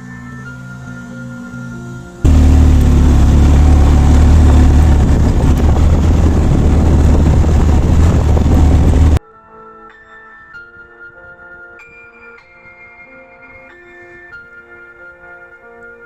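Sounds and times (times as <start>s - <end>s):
soft music: 0.0s - 2.6s, 9.2s - 16.0s
wind noise on microphone: 2.2s - 9.2s
motorcycle engine running: 2.3s - 9.2s.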